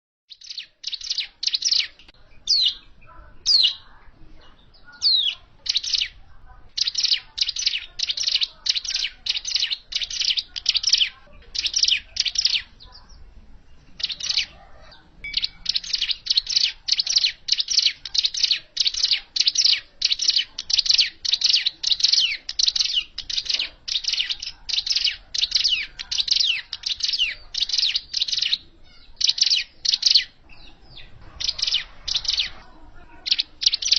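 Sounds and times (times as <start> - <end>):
bird chirping high notes: 14.0 - 32.6.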